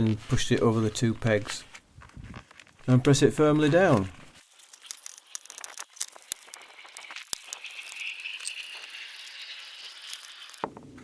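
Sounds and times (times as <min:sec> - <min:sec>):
foil insulation crinkling: 0:00.0 - 0:10.6
small clicks: 0:04.4 - 0:10.6.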